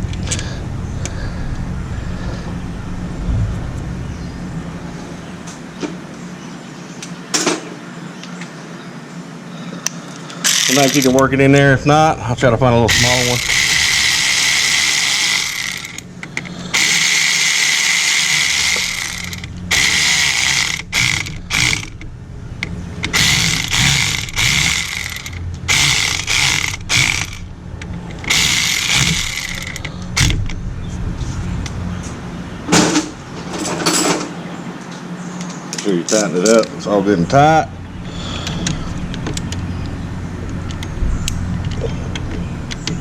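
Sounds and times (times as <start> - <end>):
ratchet tightening: 10.4 - 11.2, 12.9 - 22.0, 23.1 - 27.5, 28.1 - 30.3.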